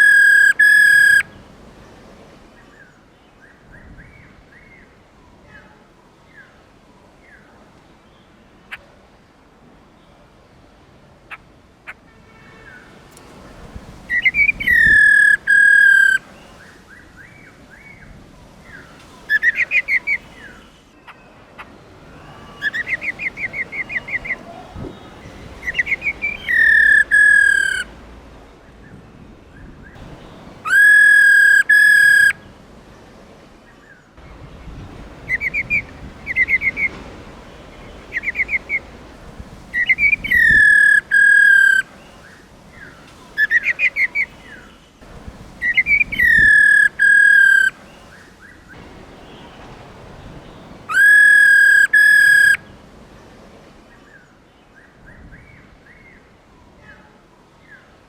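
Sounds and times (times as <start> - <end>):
harsh sliding bird calls: 0.0 - 1.2, 14.1 - 16.2, 22.3 - 27.9, 30.0 - 32.4, 35.3 - 37.0, 39.8 - 41.8, 45.6 - 47.7, 50.9 - 52.6.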